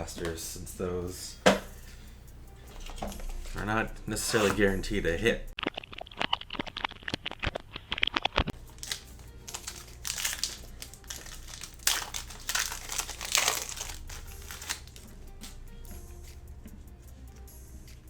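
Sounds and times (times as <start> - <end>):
plastic wrapping crinkling and tearing: 5.7 - 15.6.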